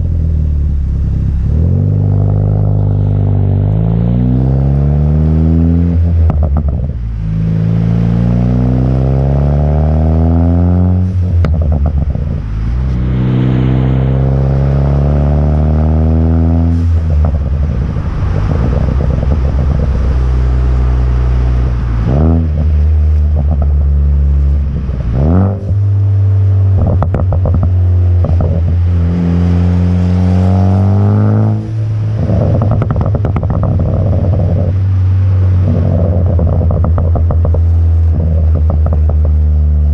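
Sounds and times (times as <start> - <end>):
car exhaust revving: 0.0 - 39.9
exhaust crackles and pops: 0.0 - 39.9.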